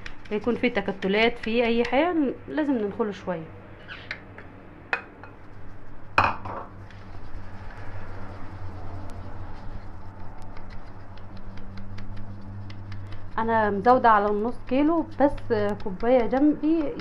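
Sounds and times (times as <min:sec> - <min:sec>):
flour sifted through a sieve: 0:06.8 - 0:17.0.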